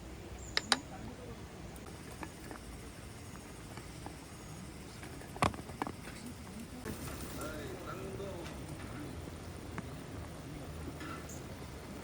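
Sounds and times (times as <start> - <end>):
low background noise: 0.0 - 12.0
sharp clicks or knocks: 0.6 - 0.9.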